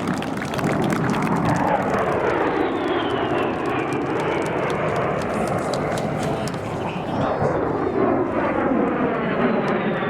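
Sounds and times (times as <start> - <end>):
airplane engine rushing: 0.0 - 10.0.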